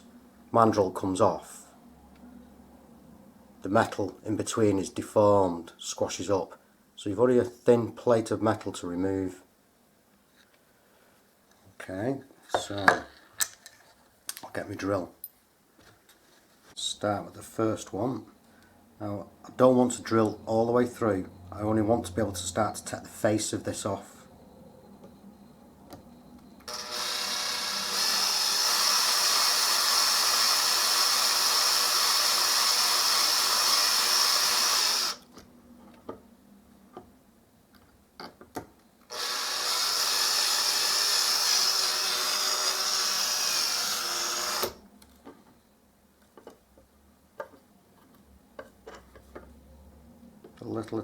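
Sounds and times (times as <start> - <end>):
power drill drilling rivet: 26.7 - 35.2, 39.1 - 44.8.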